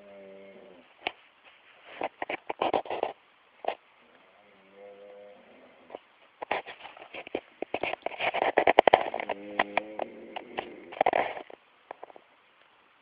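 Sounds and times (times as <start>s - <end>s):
snoring: 0.0s - 0.8s, 4.2s - 5.9s, 9.1s - 11.4s
crackling clicking breath noise: 1.0s - 4.2s, 5.2s - 12.7s.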